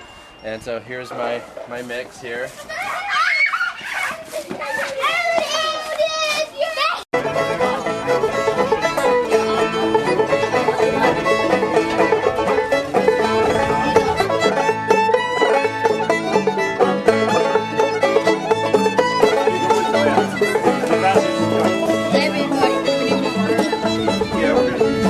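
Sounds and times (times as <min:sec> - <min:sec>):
fiddle: 0:01.1 - 0:25.0
bluegrass string music: 0:04.2 - 0:25.0
banjo: 0:07.2 - 0:25.0.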